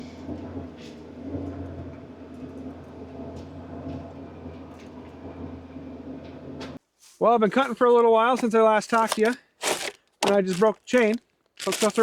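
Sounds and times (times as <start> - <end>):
engine droning: 0.0 - 6.8.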